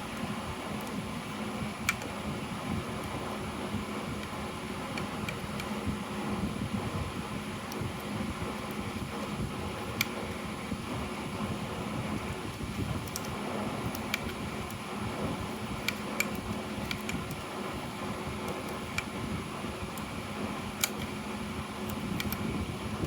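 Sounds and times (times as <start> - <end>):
fan-like mechanical hum: 0.0 - 23.0
sharp light clicks: 15.8 - 17.4, 21.8 - 22.4.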